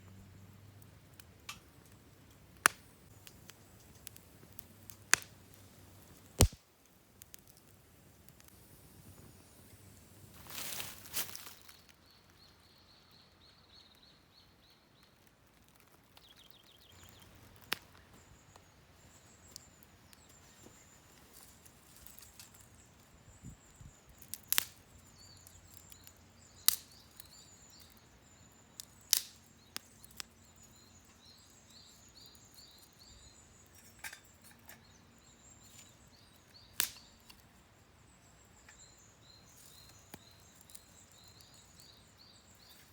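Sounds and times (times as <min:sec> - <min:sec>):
small birds chirping: 0:00.0 - 0:42.9
wood fire crackling: 0:00.0 - 0:42.9
fire hissing rush: 0:07.2 - 0:11.4.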